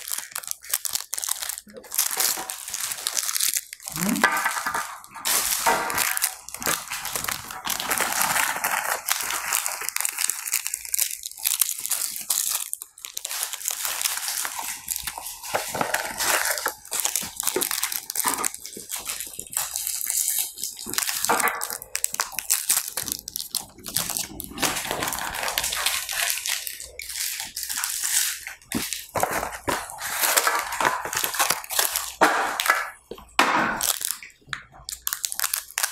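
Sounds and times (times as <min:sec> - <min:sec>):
biscuits crunching: 0:00.0 - 0:35.9
plastic wrappers crinkling: 0:00.0 - 0:35.9.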